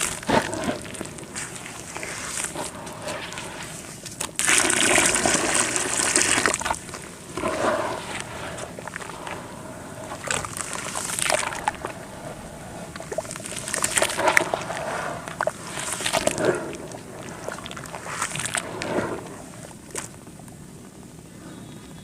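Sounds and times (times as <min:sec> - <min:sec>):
dirt crumbling: 0:00.0 - 0:20.2
water sloshing: 0:00.0 - 0:20.5.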